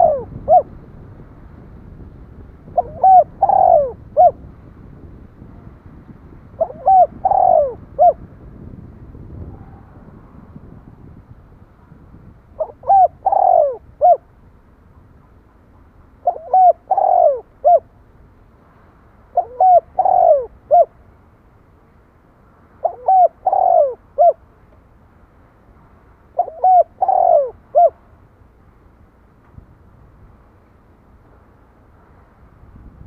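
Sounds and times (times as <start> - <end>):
dove cooing: 0.0 - 0.7, 2.7 - 4.4, 6.6 - 8.2, 12.6 - 14.3, 16.2 - 17.9, 19.3 - 21.0, 22.8 - 24.4, 26.4 - 28.0.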